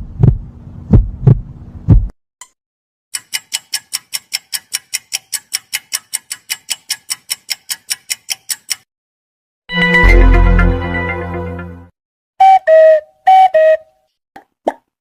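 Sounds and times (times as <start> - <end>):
rapid even ticking: 3.1 - 8.9.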